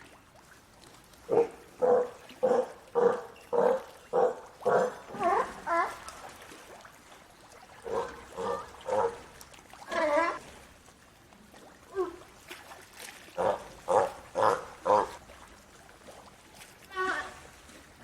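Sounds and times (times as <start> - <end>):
sea lion barking: 1.3 - 6.0, 7.8 - 9.3, 13.4 - 15.2.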